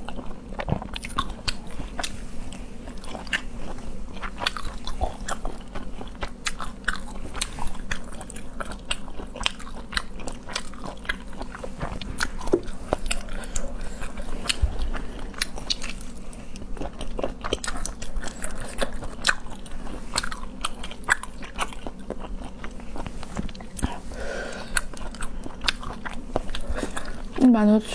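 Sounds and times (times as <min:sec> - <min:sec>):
person chewing crunchy seafood: 0:00.0 - 0:27.4.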